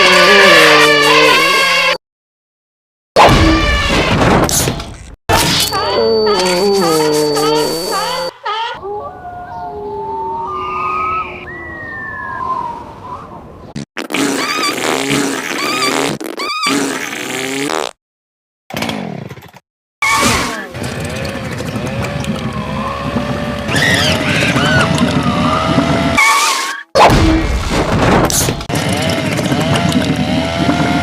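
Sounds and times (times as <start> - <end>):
squeaky wobbling pitch glides: 5.5 - 8.7
low motor-like rumble: 20.8 - 26.2.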